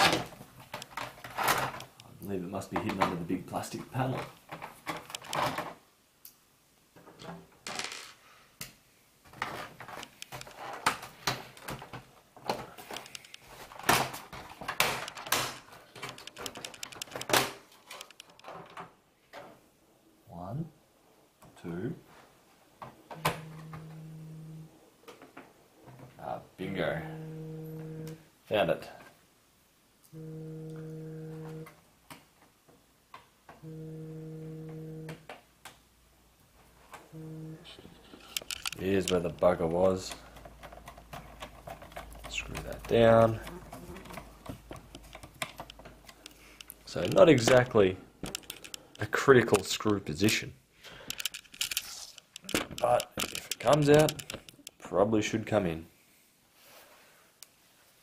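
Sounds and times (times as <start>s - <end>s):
plastic panels clicking and scraping: 0.0s - 2.0s, 4.0s - 5.8s, 9.3s - 18.9s, 37.7s - 54.8s
small clicks of screws and plastic: 12.5s - 13.4s, 48.2s - 49.1s, 51.0s - 54.8s.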